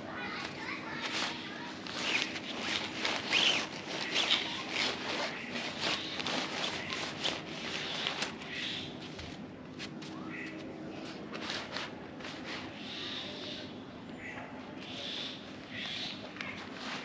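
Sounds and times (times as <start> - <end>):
tent fabric rustling: 0.2 - 8.6, 11.0 - 12.8, 16.4 - 17.0.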